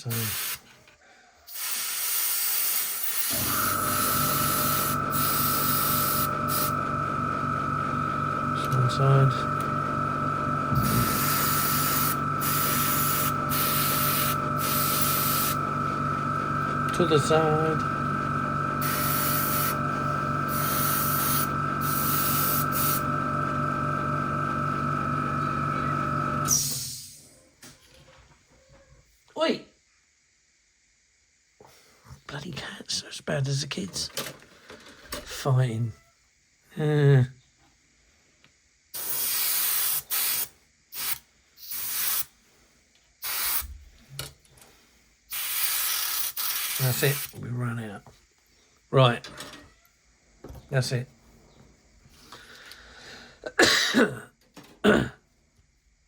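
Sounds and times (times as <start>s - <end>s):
airbrush spraying hiss: 0.0s - 0.6s, 1.5s - 6.7s, 10.8s - 15.6s, 18.8s - 19.8s, 20.5s - 23.0s, 39.0s - 42.4s, 43.2s - 43.8s, 45.3s - 47.3s
steady hum: 3.3s - 26.8s.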